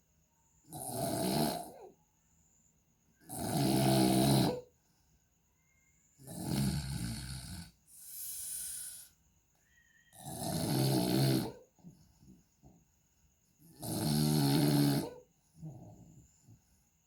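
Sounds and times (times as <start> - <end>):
loud rasping snoring: 0.7 - 1.9, 3.2 - 4.7, 6.2 - 9.0, 10.1 - 11.7, 13.6 - 16.2
soft hissing breath: 7.3 - 10.2.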